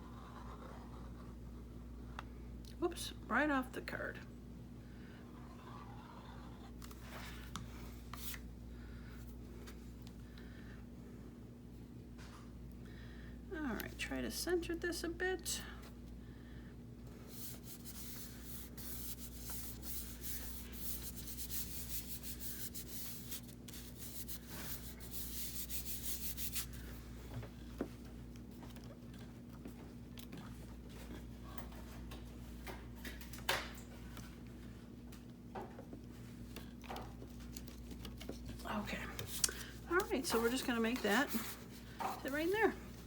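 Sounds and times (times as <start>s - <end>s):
low steady hum: 0.0s - 43.0s
hands rubbing paper: 17.3s - 26.9s, 39.2s - 42.5s.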